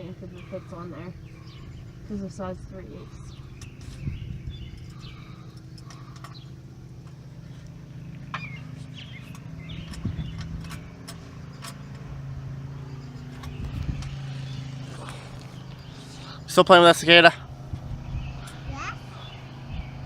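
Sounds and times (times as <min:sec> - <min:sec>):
low mechanical hum: 0:00.0 - 0:20.0
metal hand tools clinking: 0:08.3 - 0:16.6.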